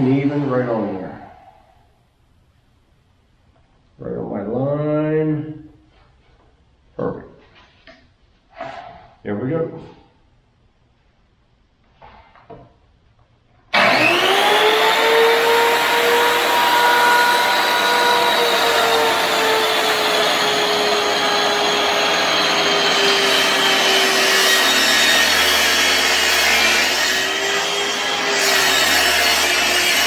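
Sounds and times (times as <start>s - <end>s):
track saw cutting wood: 0.0s - 1.2s, 13.7s - 30.0s.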